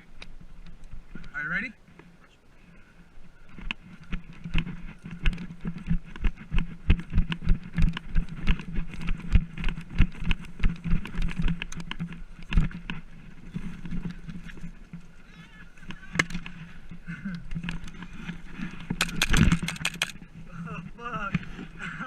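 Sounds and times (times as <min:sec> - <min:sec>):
gear jostling: 0:03.5 - 0:20.3
running footsteps: 0:03.5 - 0:20.4.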